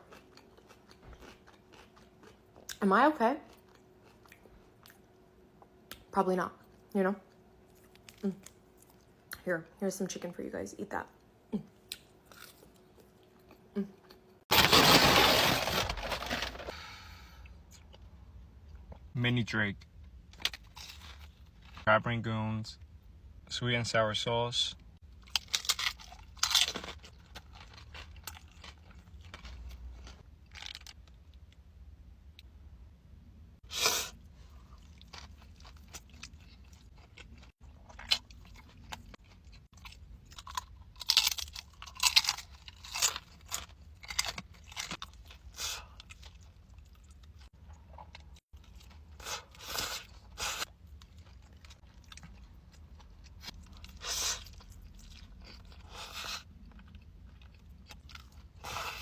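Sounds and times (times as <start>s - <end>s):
fried food crunching: 0.0s - 2.8s, 14.5s - 16.7s, 25.2s - 31.0s, 34.6s - 49.1s.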